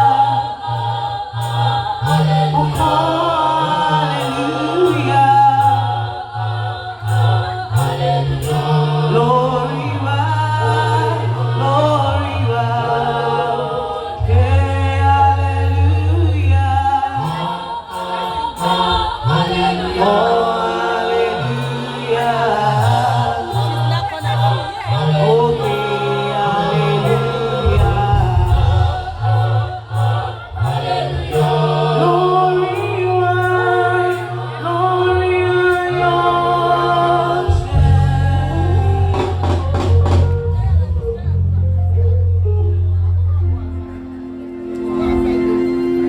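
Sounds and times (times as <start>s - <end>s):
choir singing gospel: 0.0s - 41.5s, 43.5s - 46.0s
stepping low notes: 18.6s - 46.0s.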